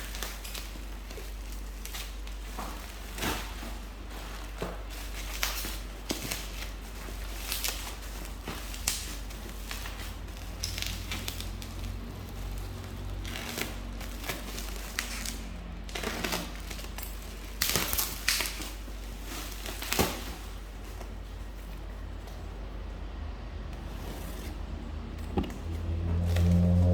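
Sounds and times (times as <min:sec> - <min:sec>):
packaging crinkling and rustling: 0:00.0 - 0:22.7, 0:23.8 - 0:26.9.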